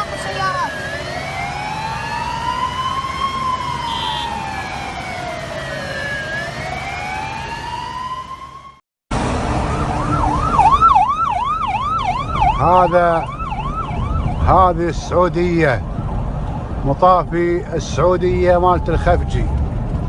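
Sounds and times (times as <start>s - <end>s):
siren wailing: 0.0s - 19.7s
fire engine siren yelping: 0.0s - 20.0s
low engine rumble: 9.1s - 20.0s.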